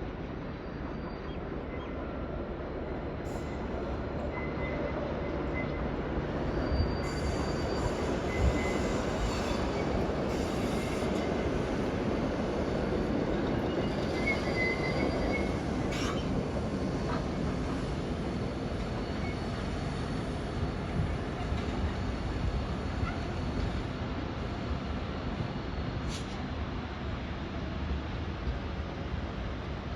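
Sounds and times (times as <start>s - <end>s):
train rumbling on rails: 0.0s - 29.9s
high wheel squeal: 4.3s - 11.8s, 13.3s - 16.4s.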